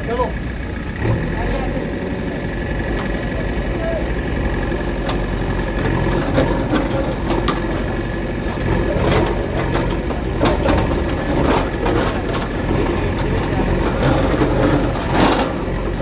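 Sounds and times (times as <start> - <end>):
bulldozer diesel engine running: 0.0 - 16.0
knocks and clatter: 4.4 - 16.0.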